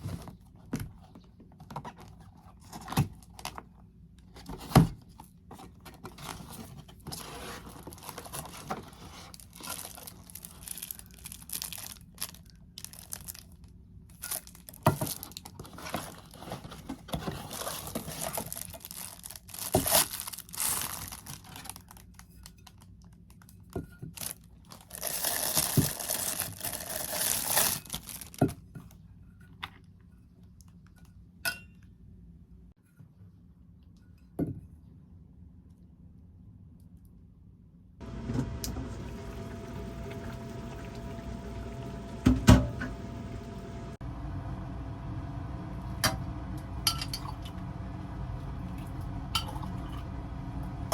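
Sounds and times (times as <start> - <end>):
packaging crinkling and tearing: 6.1 - 23.1, 24.2 - 28.4.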